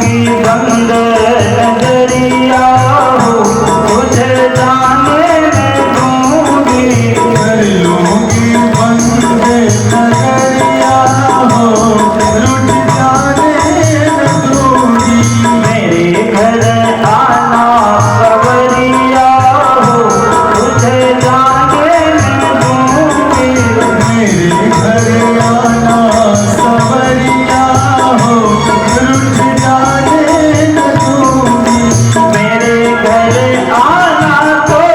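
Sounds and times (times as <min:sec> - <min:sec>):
devotional song melody: 0:00.0 - 0:34.9
steady percussion rhythm: 0:00.0 - 0:34.9.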